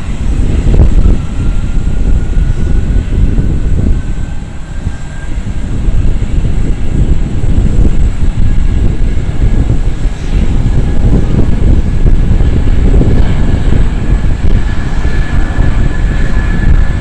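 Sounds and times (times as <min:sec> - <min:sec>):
jet engines at takeoff power: 0:00.0 - 0:17.0.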